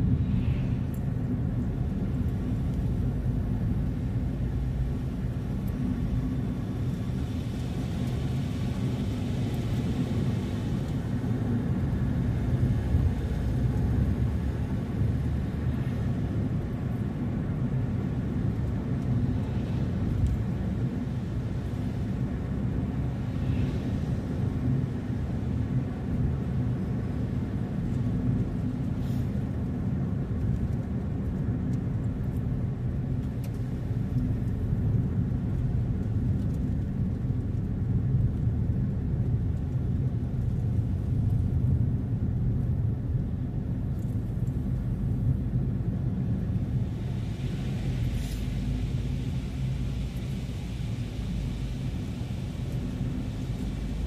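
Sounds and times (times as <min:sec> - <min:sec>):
car engine rumble: 0:00.0 - 0:54.0
tyre road noise: 0:00.0 - 0:54.0.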